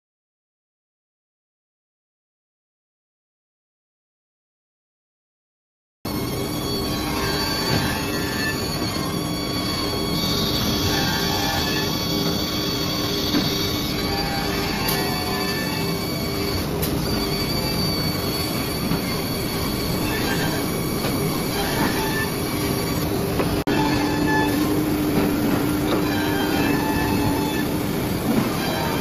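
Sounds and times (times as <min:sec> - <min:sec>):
cnc router running: 0:06.1 - 0:29.0.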